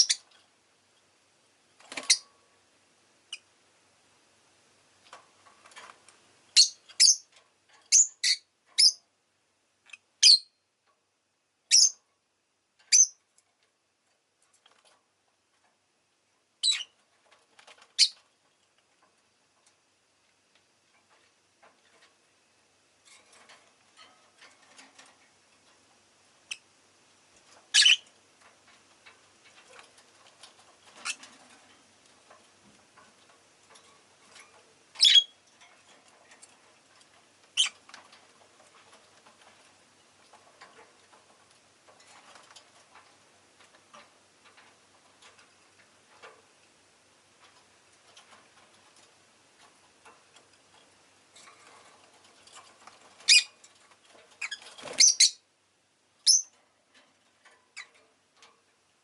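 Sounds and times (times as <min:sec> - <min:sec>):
lovebird chirps: 0:00.0 - 0:00.2, 0:06.6 - 0:07.2, 0:07.9 - 0:09.0, 0:10.2 - 0:10.6, 0:11.7 - 0:12.0, 0:12.9 - 0:13.2, 0:16.6 - 0:16.9, 0:27.7 - 0:28.0, 0:35.0 - 0:35.4, 0:53.3 - 0:53.5, 0:54.4 - 0:55.4, 0:56.2 - 0:56.5
faint ticks and clicks: 0:11.8 - 0:55.2, 0:55.8 - 0:59.0.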